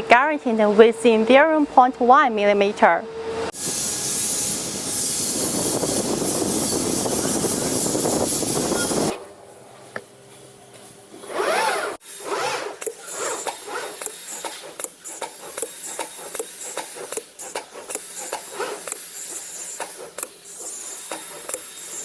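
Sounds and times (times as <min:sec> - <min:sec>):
machine motor whine: 0:03.4 - 0:09.2.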